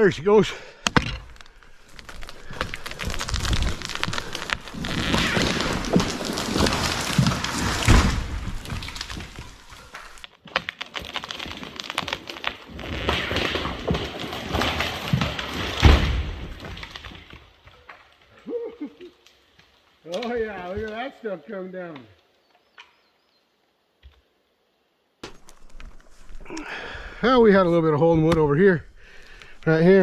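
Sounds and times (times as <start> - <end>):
tree trunk thudding on ground: 0.8 - 17.4, 25.2 - 26.4
branches snapping and swishing: 1.2 - 17.3.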